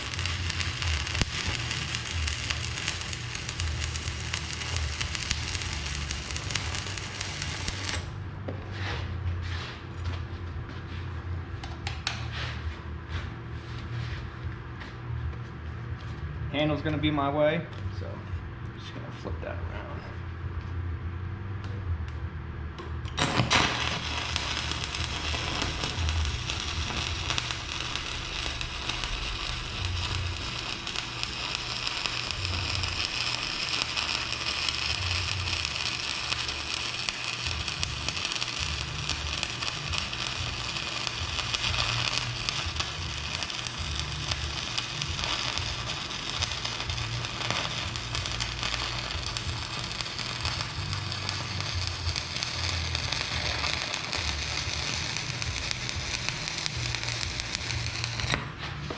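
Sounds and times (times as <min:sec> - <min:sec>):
welding arc crackling and sizzling: 0:00.0 - 0:08.2, 0:23.0 - 0:58.6.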